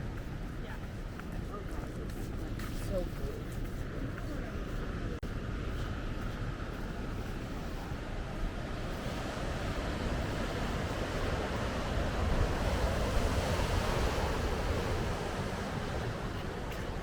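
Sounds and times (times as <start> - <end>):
wind rumble on microphone: 0.0 - 17.0
ocean waves breaking: 5.7 - 17.0.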